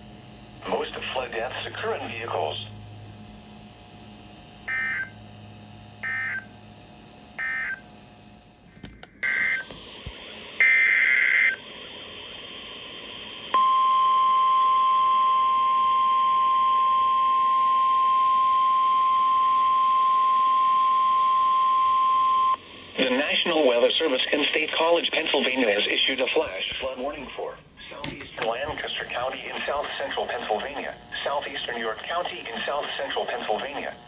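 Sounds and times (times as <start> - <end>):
steady warning tone: 0.3 - 6.7, 7.3 - 8.0, 9.2 - 9.7, 13.5 - 22.7.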